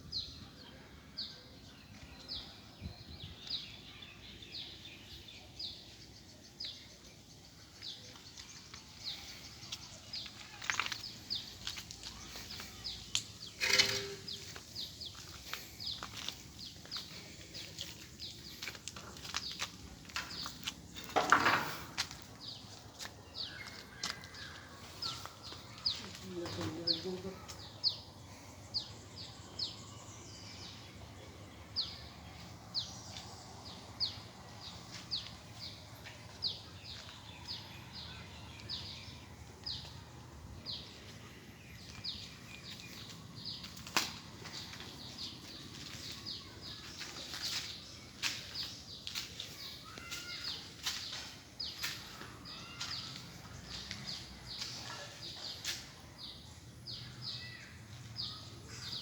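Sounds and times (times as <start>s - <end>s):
bird chirping: 1.3s - 59.0s.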